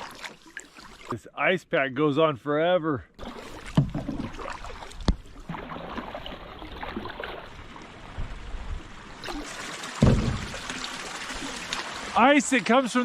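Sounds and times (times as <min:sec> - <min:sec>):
paddle splashes: 0:00.0 - 0:01.2, 0:03.2 - 0:08.3, 0:09.2 - 0:13.0.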